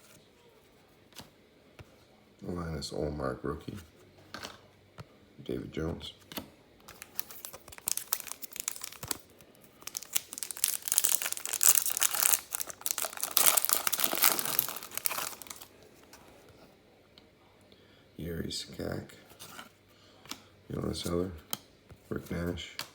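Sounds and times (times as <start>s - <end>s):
plastic wrapper crinkling: 6.9s - 15.8s.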